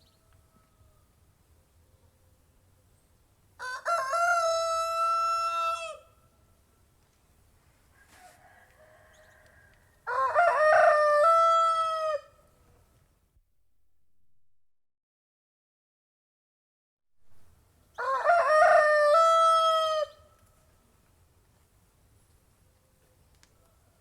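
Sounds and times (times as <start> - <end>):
rooster crowing: 3.6 - 6.2, 7.9 - 12.4, 18.0 - 20.3.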